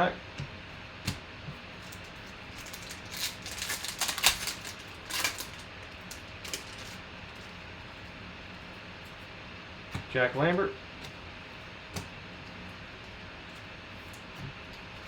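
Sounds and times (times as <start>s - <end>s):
trading cards clicking and rustling: 1.8s - 7.0s.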